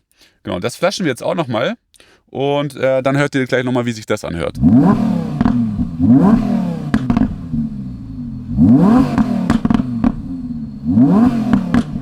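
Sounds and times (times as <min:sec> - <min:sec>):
exhaust pops and crackles: 0:04.4 - 0:12.0
car engine revving: 0:04.5 - 0:12.0.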